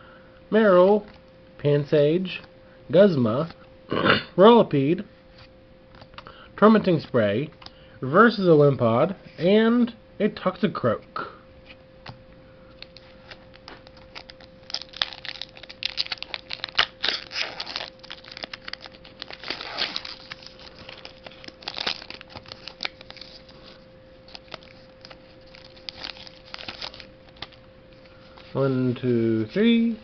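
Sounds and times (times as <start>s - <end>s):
faint steady hum: 0.0s - 30.0s
foil wrapper tearing and crinkling: 12.8s - 27.6s.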